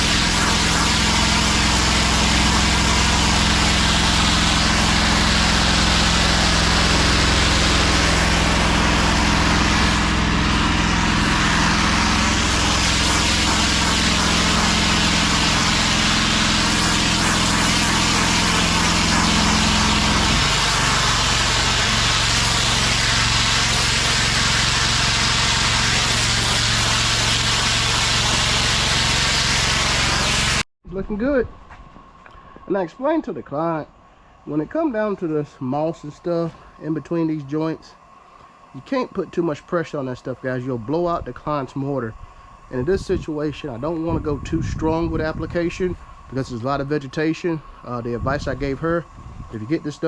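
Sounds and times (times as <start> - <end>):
water spray hissing: 0.0 - 30.6
pressure washer engine: 0.0 - 30.7, 32.6 - 50.0.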